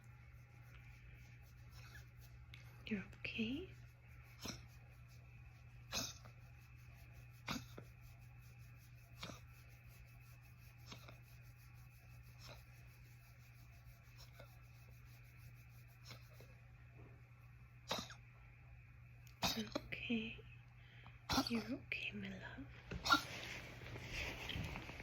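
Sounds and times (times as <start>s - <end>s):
pet coughing: 4.4s - 4.7s, 5.9s - 6.4s, 7.4s - 7.9s, 17.8s - 18.2s, 19.4s - 19.9s, 21.3s - 21.8s, 22.9s - 23.3s.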